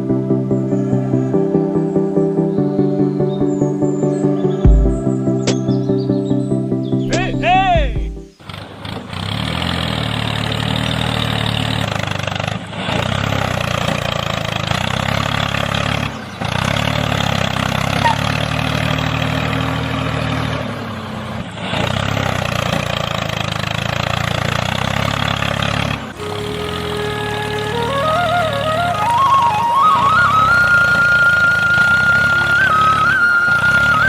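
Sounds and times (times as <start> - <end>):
engine running with rattle: 8.4 - 34.0.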